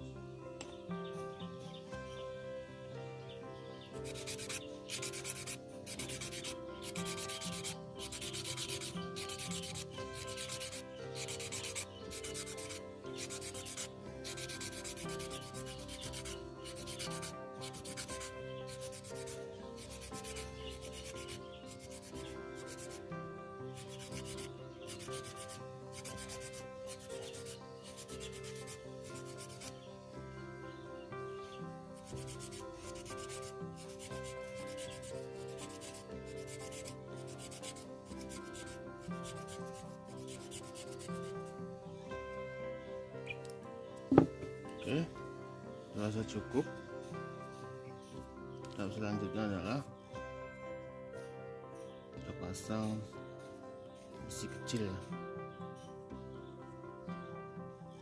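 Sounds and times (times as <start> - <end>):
chopstick scraping on whetstone: 4.0 - 23.0, 23.8 - 29.9.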